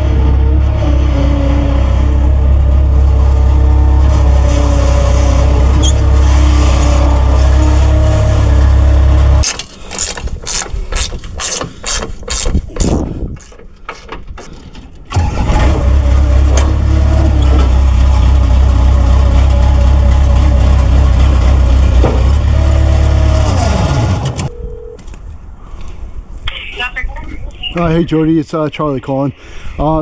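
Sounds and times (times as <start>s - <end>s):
engine running: 0.0s - 9.5s, 15.1s - 24.5s
sharp clicks and knocks: 9.4s - 15.2s.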